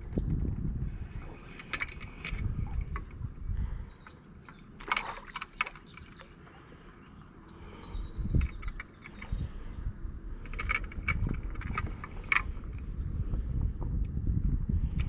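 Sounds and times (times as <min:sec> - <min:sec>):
wind buffeting microphone: 0:00.0 - 0:15.0
handling clicks and knocks: 0:01.4 - 0:03.2, 0:04.0 - 0:06.4, 0:08.4 - 0:09.4, 0:10.4 - 0:12.8.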